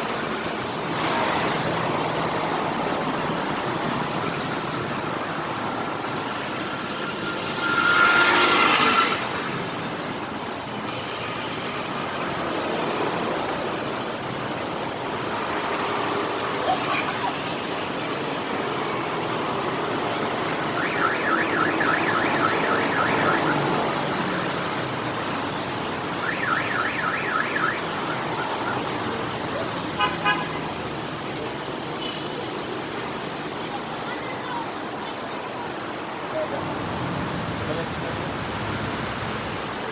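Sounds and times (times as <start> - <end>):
street traffic: 0.0 - 39.9
warbling electronic alarm: 20.6 - 23.9, 26.2 - 28.8.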